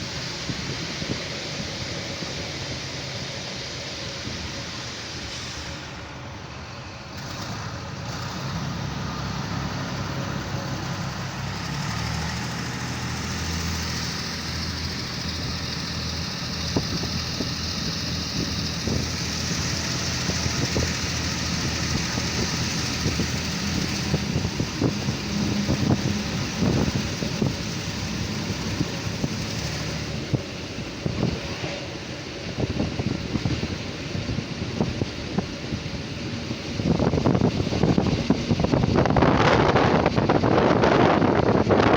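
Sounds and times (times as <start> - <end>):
railcar engine drone: 0.0 - 41.9
wheels clattering on track: 0.0 - 41.9
air rushing past: 7.2 - 41.9.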